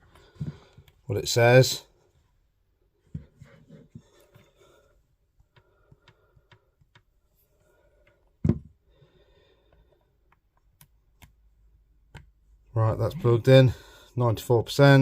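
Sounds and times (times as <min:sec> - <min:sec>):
cable and tablet clicks and taps: 0:05.4 - 0:07.1, 0:10.2 - 0:11.4, 0:12.0 - 0:12.4.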